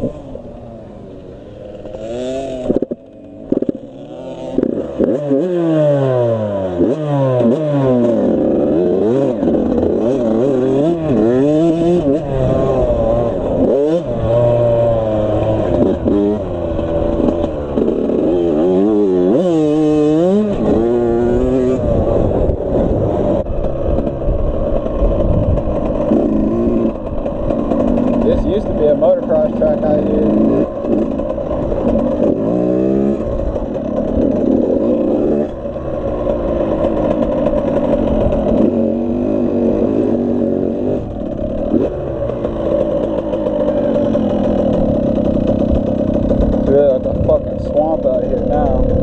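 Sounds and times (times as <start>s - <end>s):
dirt bike engines revving: 0.0s - 49.0s.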